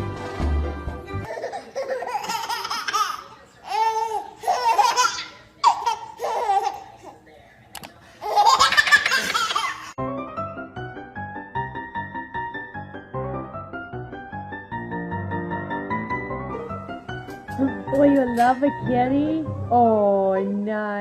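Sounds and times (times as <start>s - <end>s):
music: 0.0s - 1.3s, 10.0s - 21.0s
baby laughing: 1.2s - 7.2s, 8.2s - 10.0s.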